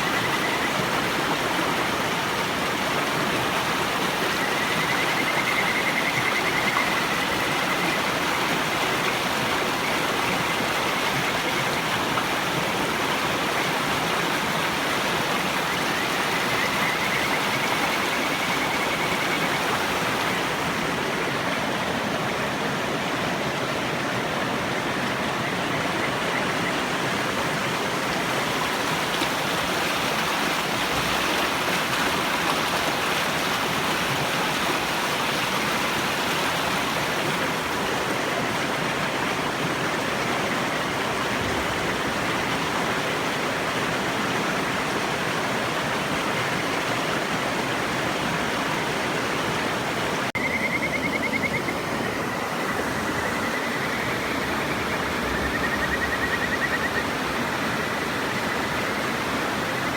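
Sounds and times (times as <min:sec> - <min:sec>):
frogs trilling: 0:00.0 - 0:01.6, 0:03.5 - 0:12.4, 0:15.2 - 0:21.4, 0:24.7 - 0:31.5, 0:50.3 - 0:59.9
river rushing: 0:00.0 - 0:59.9.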